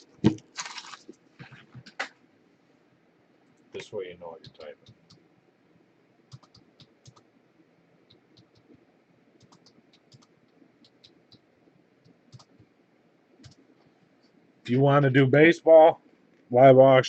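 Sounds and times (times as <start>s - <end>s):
typing on computer keyboard: 6.3s - 7.2s, 8.1s - 8.8s, 9.4s - 11.4s, 12.3s - 12.6s, 13.4s - 13.6s.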